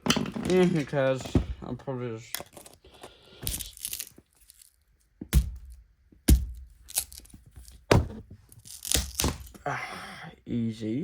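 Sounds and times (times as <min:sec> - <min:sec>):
sharp knocks and cracks: 0:05.2 - 0:09.6.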